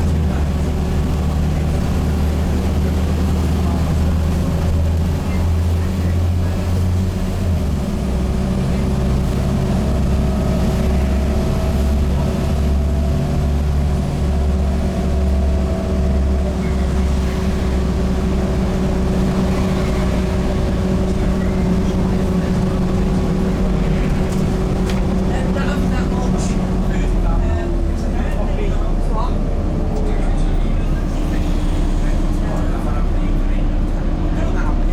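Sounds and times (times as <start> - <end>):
bus diesel engine droning: 0.0 - 34.9.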